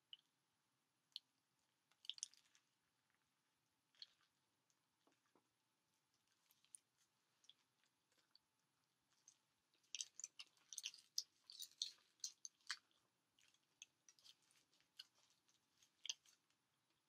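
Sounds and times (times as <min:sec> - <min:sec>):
chewing with wet mouth clicks: 0:01.9 - 0:03.2, 0:03.9 - 0:04.4, 0:07.4 - 0:08.5, 0:09.1 - 0:16.6.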